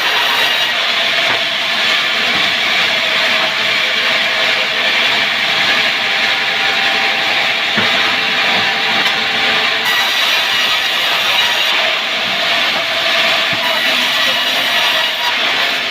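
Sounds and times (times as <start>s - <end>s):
power saw cutting wood: 0.0s - 15.9s.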